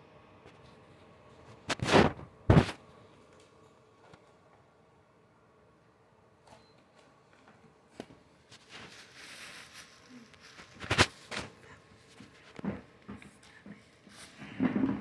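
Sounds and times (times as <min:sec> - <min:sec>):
soft hiss: 0:08.0 - 0:12.7.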